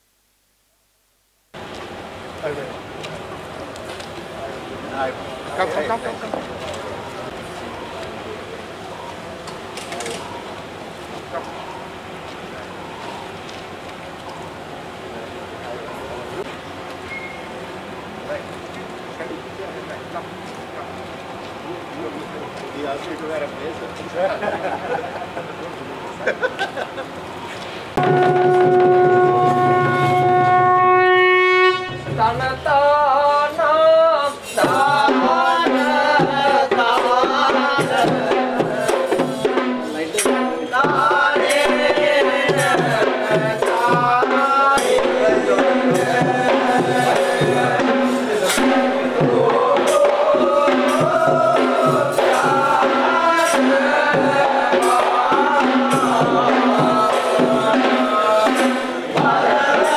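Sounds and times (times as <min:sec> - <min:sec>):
hand drums: 0:28.0 - 0:31.1, 0:34.6 - 0:59.9
horn-like held note: 0:28.0 - 0:32.5
person singing or chanting: 0:31.9 - 0:59.9.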